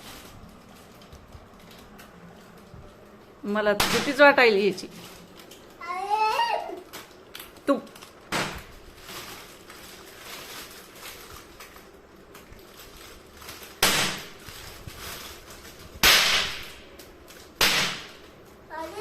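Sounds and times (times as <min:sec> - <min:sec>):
firecracker bangs: 0:13.8 - 0:14.4, 0:16.0 - 0:16.9, 0:17.6 - 0:18.2.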